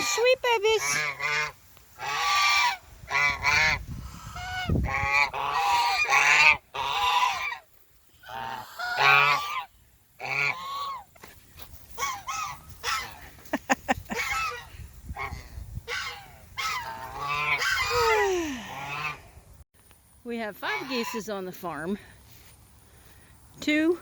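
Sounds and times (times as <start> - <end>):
geese honking: 0.0 - 11.1, 12.0 - 13.2, 15.2 - 19.2, 20.5 - 21.8.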